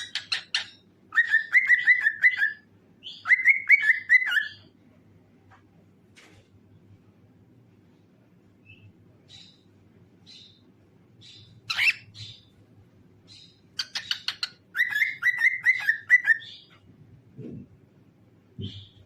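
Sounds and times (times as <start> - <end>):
cockatiel chirping and whistling: 0.0 - 4.7, 11.3 - 12.5, 13.3 - 16.7.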